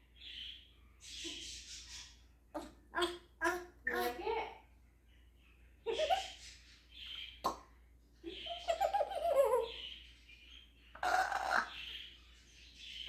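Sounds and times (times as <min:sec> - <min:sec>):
parrot making laugh-like sounds: 0:05.9 - 0:06.4, 0:08.3 - 0:09.8, 0:11.0 - 0:11.7.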